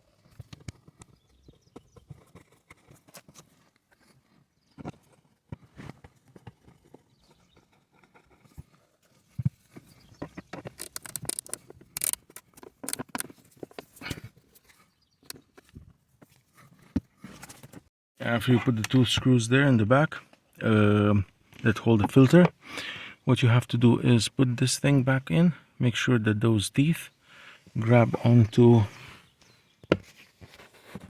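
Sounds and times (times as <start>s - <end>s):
plastic clicks and knocks: 10.2s - 13.9s.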